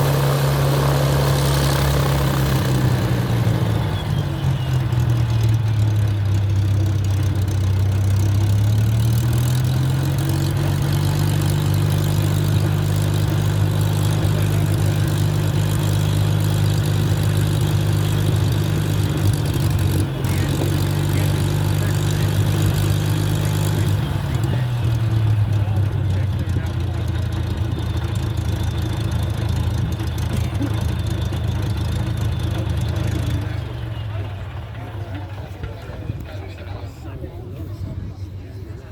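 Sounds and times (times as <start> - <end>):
aircraft engine running: 0.0 - 38.9.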